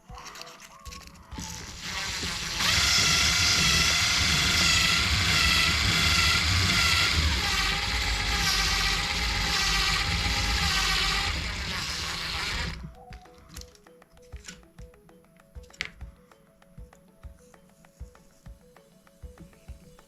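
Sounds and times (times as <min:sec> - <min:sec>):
small motor whining: 0:01.3 - 0:13.0.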